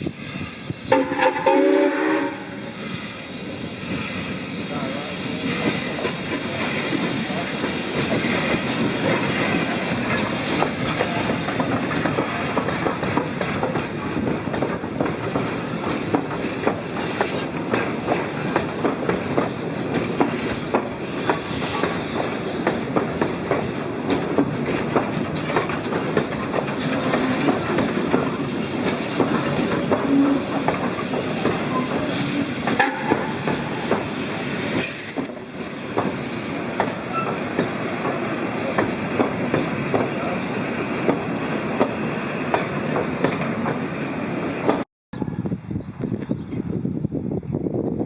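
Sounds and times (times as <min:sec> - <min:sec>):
train wheels rumbling on rails: 0:00.0 - 0:48.0
wheel squeal: 0:37.1 - 0:37.4.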